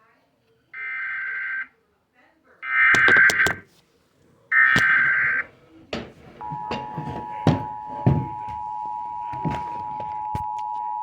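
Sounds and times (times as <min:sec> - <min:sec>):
knocks and thumps: 0:03.0 - 0:03.6, 0:05.9 - 0:08.6.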